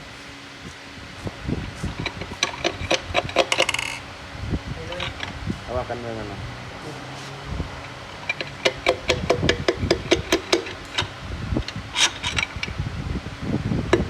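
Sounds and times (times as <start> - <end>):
sharp metallic clicks and taps: 7.8 - 12.7.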